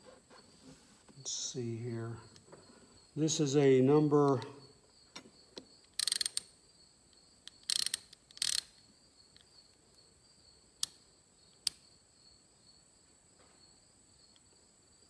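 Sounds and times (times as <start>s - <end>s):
crickets trilling: 0.0s - 15.0s
sharp metal clicks: 5.8s - 6.5s, 7.4s - 8.8s.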